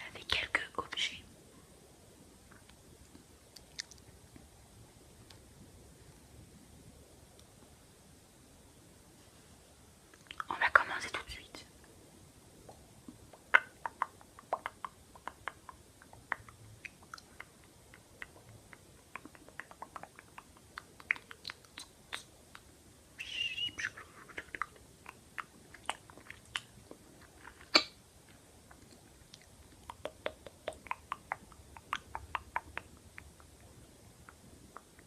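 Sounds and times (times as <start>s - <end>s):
wet mouth clicks and smacks: 2.5s - 4.1s, 10.1s - 10.6s, 12.7s - 22.7s, 24.0s - 28.0s, 28.7s - 33.6s.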